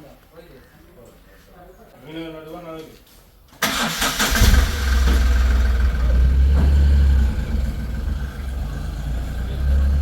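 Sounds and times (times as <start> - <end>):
vehicle engine running: 4.7 - 10.0.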